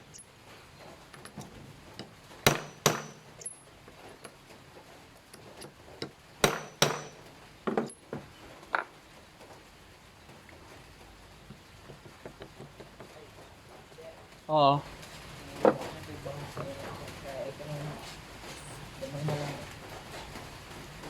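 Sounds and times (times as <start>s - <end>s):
knocks on metal mold: 2.5s - 3.3s, 6.4s - 7.9s.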